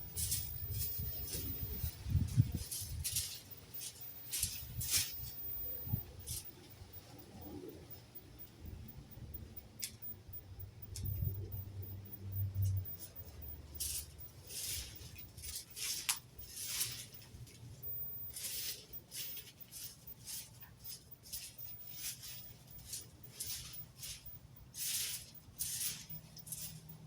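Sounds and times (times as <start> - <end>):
rake scraping through dry leaves: 0.1 - 5.5, 13.7 - 17.3, 18.3 - 27.0.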